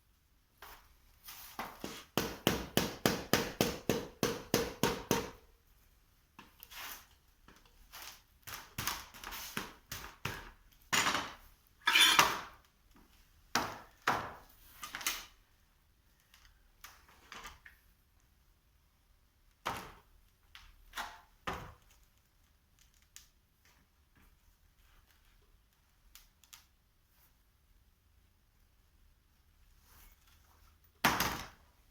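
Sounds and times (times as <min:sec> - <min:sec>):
scraping metal clank: 0:11.8 - 0:12.4
metal tools knocking and clinking: 0:11.9 - 0:12.4.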